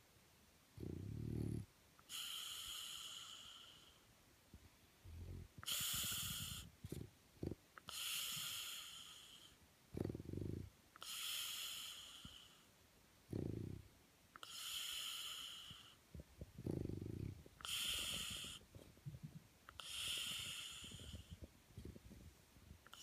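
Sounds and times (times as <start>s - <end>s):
dog snoring: 0.8s - 4.0s, 5.0s - 12.6s, 13.3s - 16.0s, 16.6s - 18.8s, 19.7s - 22.0s.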